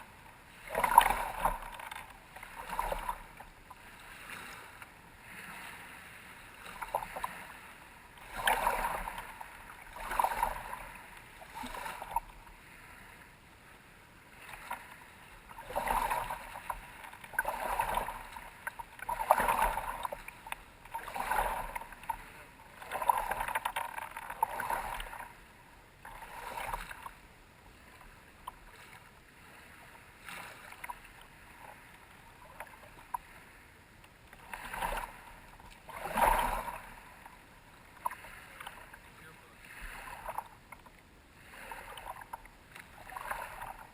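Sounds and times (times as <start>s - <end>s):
water splashing: 0.0s - 13.2s, 14.3s - 33.6s, 34.2s - 43.9s.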